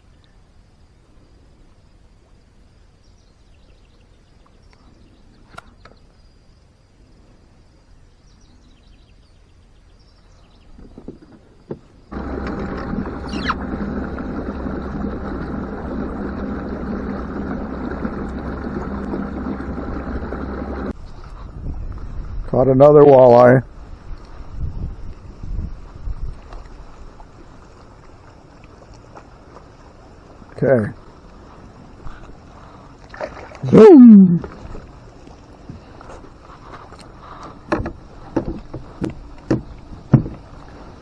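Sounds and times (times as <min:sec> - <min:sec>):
motor drone: 0:12.1 - 0:21.0
faint high chirps: 0:13.3 - 0:13.6.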